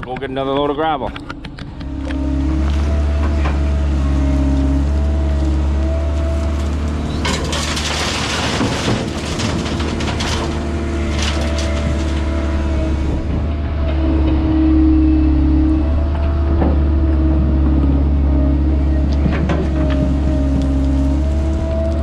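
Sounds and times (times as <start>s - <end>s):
concrete debris crunching and clattering: 1.2s - 14.3s, 18.6s - 22.0s
diesel engine running: 1.4s - 22.0s.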